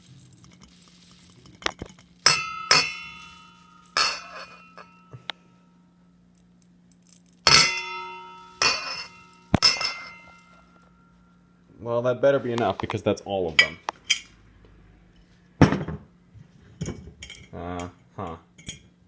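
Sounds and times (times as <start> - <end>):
oats poured into bowl: 0.0 - 2.3
mixing bowl knocked and ringing: 0.2 - 5.2, 7.5 - 10.6.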